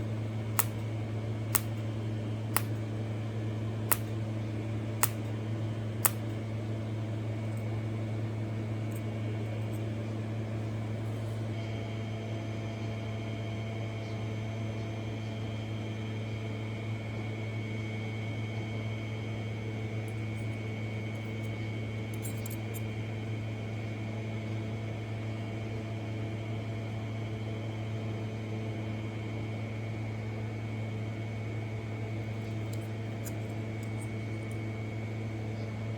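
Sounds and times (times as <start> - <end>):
short clicks: 0.0 - 0.8, 1.5 - 1.8, 2.6 - 2.8, 3.9 - 4.1, 5.0 - 5.3, 6.0 - 6.3.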